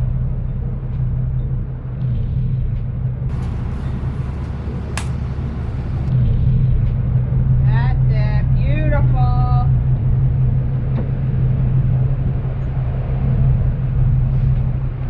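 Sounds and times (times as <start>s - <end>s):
boat engines idling: 1.6s - 6.1s
sharp click: 5.0s - 5.2s.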